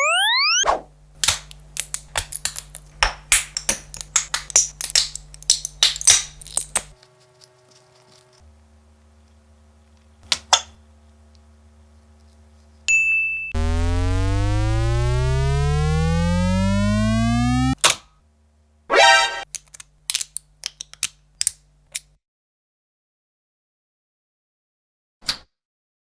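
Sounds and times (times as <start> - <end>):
motor hum: 13.6 - 17.8.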